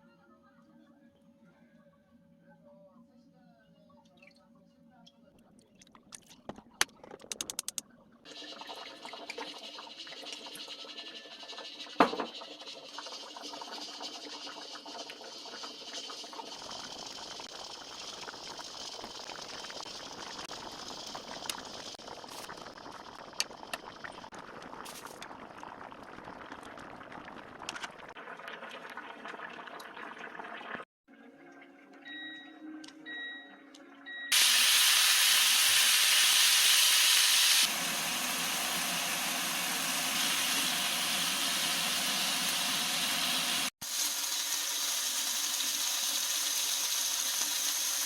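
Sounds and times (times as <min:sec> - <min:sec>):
liquid hissing: 0:34.4 - 0:48.0.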